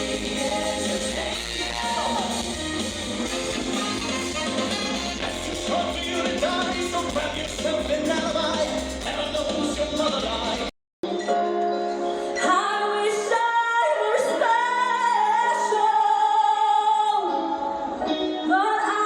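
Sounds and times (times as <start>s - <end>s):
show music accompaniment: 0.0s - 13.5s.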